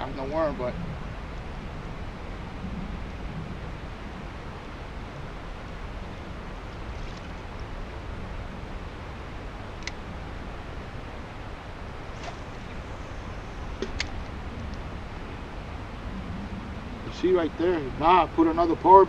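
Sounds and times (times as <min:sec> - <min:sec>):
wind: 0:00.0 - 0:19.0
rushing water: 0:03.7 - 0:18.8.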